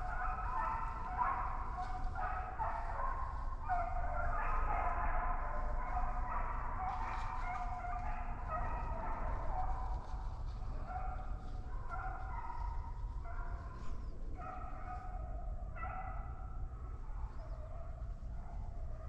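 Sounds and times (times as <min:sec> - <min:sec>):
hounds baying: 0:00.0 - 0:19.0
steady low rumble: 0:05.5 - 0:15.8.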